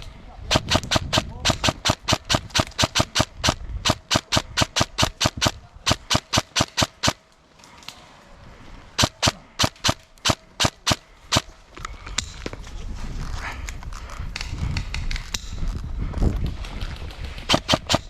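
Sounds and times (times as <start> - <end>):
airsoft gun firing shots: 0.5 - 7.2, 9.0 - 11.5, 17.5 - 18.0.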